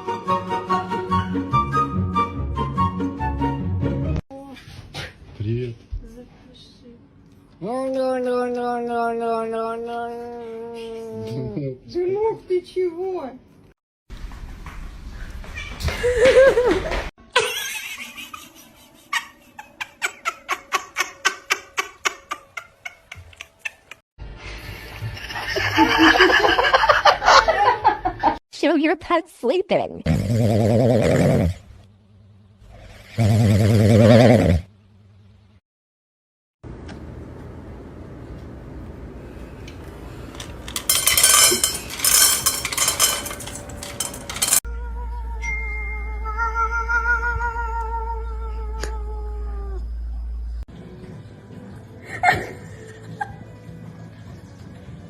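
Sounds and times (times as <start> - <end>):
dishes and cutlery clattering: 40.4 - 44.6.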